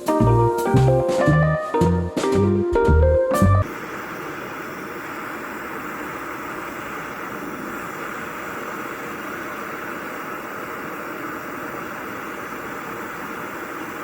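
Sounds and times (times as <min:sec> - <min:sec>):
gas torch flame hissing: 0:03.6 - 0:14.0.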